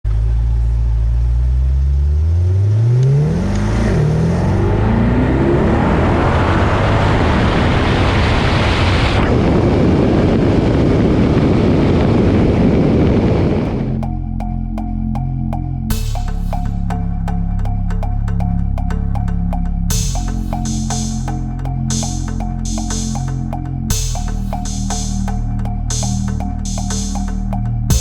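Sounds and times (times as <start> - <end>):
car engine revving and roaring: 0.1 - 14.1.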